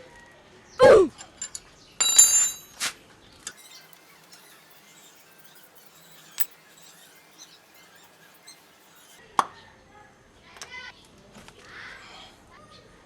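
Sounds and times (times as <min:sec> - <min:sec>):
metal hand tools clattering: 0:01.3 - 0:02.8
short ringing: 0:02.0 - 0:02.8.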